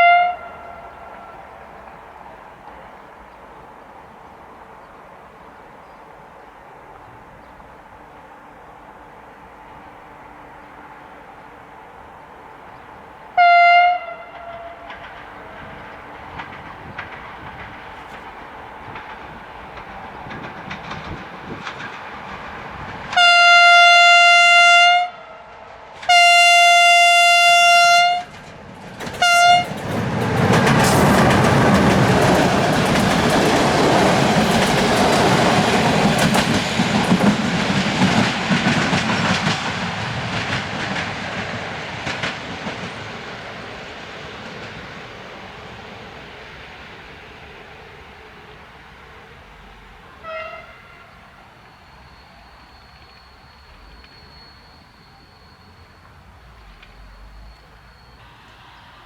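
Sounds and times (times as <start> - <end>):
locomotive horn blasts: 0.0 - 1.5, 13.4 - 14.9, 23.1 - 28.4, 29.2 - 29.7, 50.2 - 51.4
train wheels clattering on rails: 14.2 - 23.8, 25.5 - 59.0.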